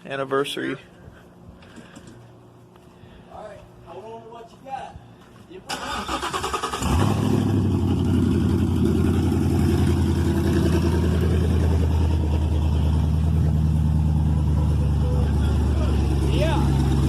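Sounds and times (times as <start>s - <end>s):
car engine loud low idle: 6.8s - 17.0s.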